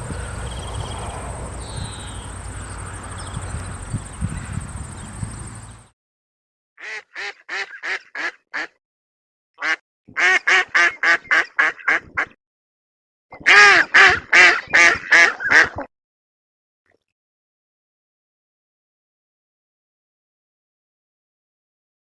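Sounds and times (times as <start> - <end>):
duck quacking: 6.8 - 8.8, 9.6 - 12.4, 13.4 - 15.9.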